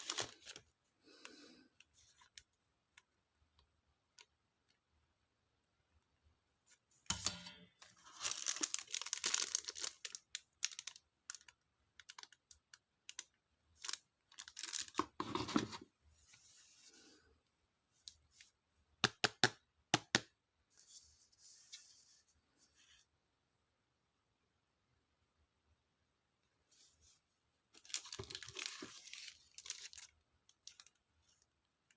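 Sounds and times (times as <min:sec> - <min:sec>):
paper and plastic tearing and crinkling: 0:08.0 - 0:10.8, 0:27.8 - 0:30.1.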